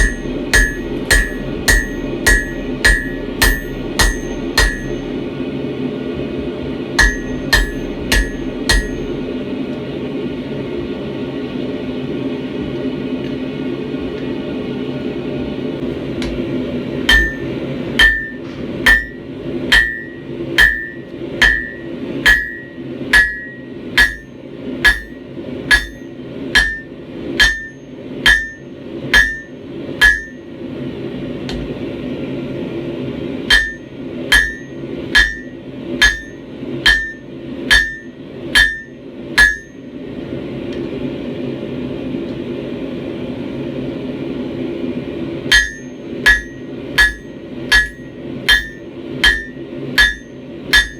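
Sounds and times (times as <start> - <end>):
hammer ringing on anvil: 0.0 - 5.2, 7.0 - 9.2, 17.1 - 30.4, 33.5 - 39.9, 45.5 - 50.9
steady low hum: 0.0 - 50.9.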